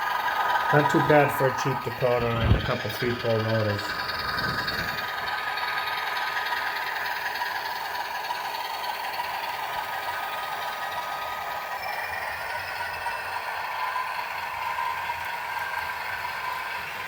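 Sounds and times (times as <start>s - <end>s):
model locomotive diesel engine sound: 0.0s - 17.0s
electric motors and gears whirring: 0.4s - 17.0s.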